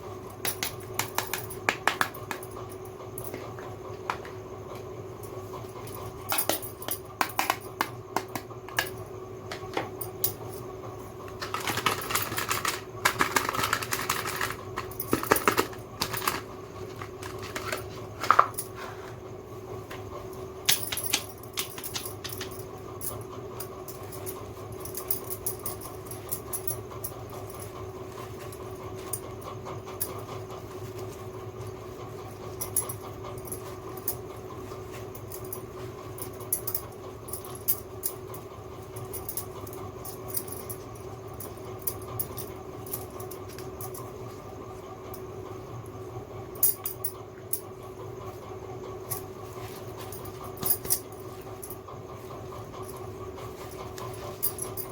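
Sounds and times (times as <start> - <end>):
steady background hum: 0.0 - 54.9
plastic toy pieces clicking: 11.4 - 16.4.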